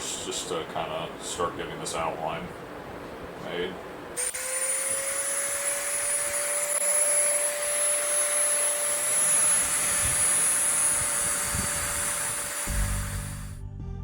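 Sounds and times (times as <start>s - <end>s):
bit grinding steel: 4.2s - 13.6s
rotary tool whining: 4.2s - 13.6s.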